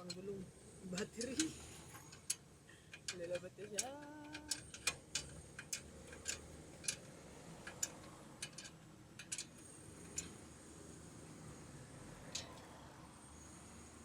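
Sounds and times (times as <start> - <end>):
metallic clicks and taps: 2.1 - 7.0, 7.6 - 10.4, 12.3 - 12.7.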